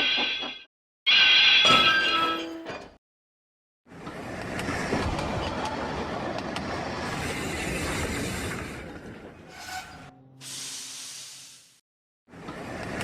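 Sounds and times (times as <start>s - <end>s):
steam hissing: 10.4s - 11.8s.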